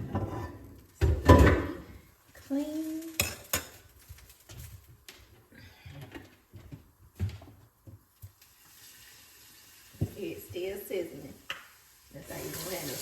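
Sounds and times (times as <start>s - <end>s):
pan and utensils clattering: 0.0s - 1.9s, 2.9s - 4.0s.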